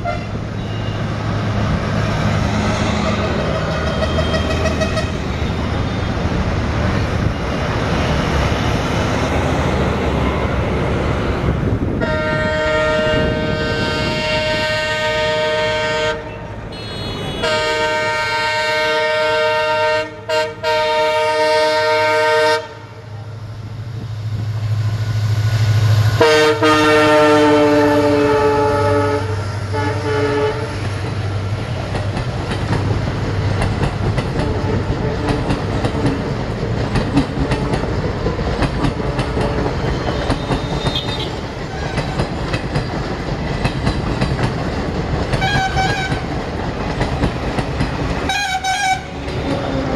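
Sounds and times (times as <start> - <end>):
locomotive air horn blasts: 0.0 - 1.1, 3.0 - 5.2, 12.0 - 23.1, 26.2 - 30.9, 45.4 - 46.2, 48.3 - 49.1
train wheels clickety-clack: 1.4 - 12.2, 30.6 - 49.9.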